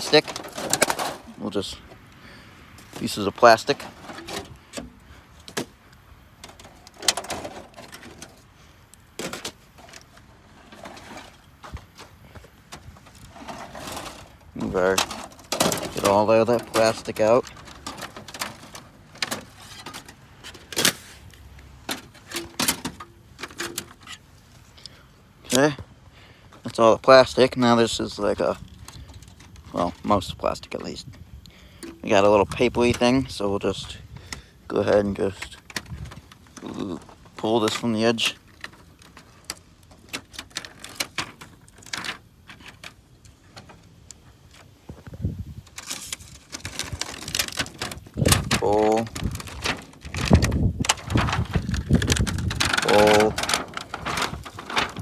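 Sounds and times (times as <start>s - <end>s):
plastic pieces clicking and clattering: 0.0s - 1.4s, 6.4s - 8.4s, 9.2s - 11.8s, 12.8s - 24.2s, 34.9s - 43.8s, 45.6s - 55.0s
papery sheet crackling while peeled: 45.8s - 55.0s.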